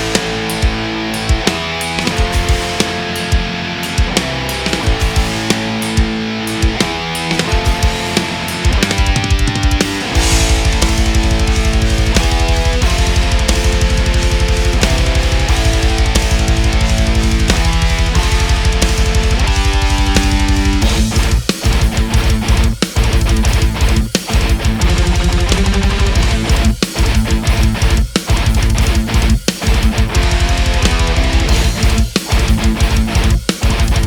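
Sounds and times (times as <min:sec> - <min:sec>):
heavy metal music: 0:00.0 - 0:34.0
fast kick-drum pattern: 0:07.5 - 0:34.0.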